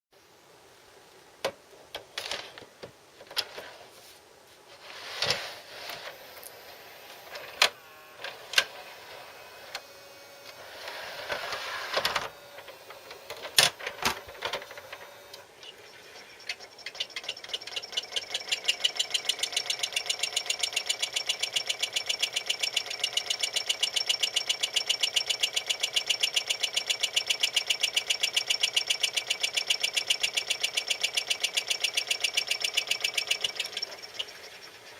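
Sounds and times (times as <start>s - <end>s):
mechanism clunks and clicks: 7.2s - 10.6s, 11.2s - 34.9s
rapid regular ticking: 15.9s - 34.9s.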